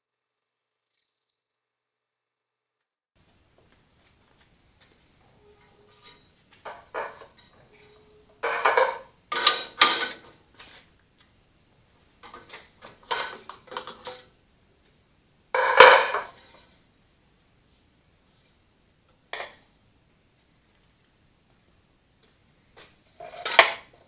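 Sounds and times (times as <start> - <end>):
metal tools clanking: 5.2 - 10.8, 12.2 - 14.3, 15.6 - 16.6, 23.2 - 24.0.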